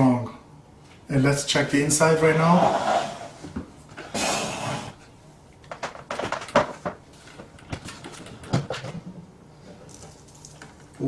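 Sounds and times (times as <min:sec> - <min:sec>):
vacuum cleaner knocks and clatter: 0:05.7 - 0:07.0.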